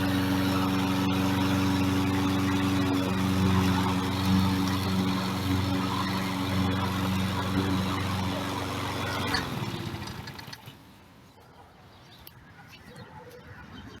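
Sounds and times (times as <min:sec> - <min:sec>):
lawn mower engine running: 0:00.0 - 0:10.8.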